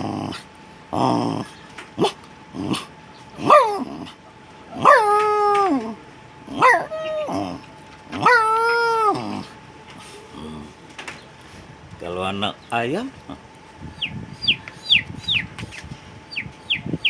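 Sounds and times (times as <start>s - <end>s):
man imitating dog yelps and howls: 3.4s - 3.9s, 4.8s - 7.6s, 8.2s - 9.5s.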